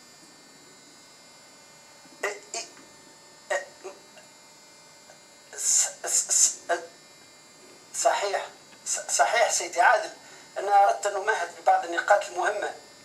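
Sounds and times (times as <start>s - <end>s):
electrical hum: 0.0s - 13.0s
person's voice bursts: 2.2s - 2.8s, 3.5s - 4.1s, 5.6s - 7.0s.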